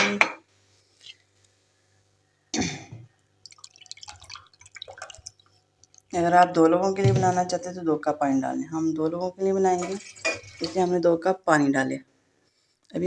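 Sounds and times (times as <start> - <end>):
water dripping and trickling: 3.4 - 6.2
water splashing into pan: 3.5 - 6.2.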